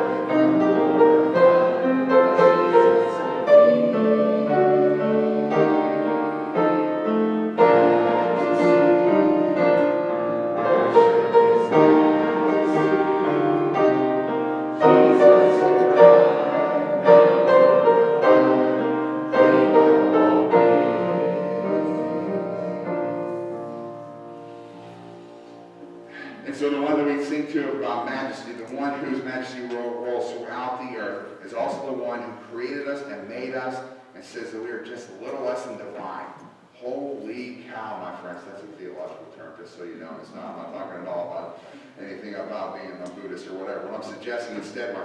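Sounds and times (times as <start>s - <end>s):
slow piano chords: 0.0s - 27.2s.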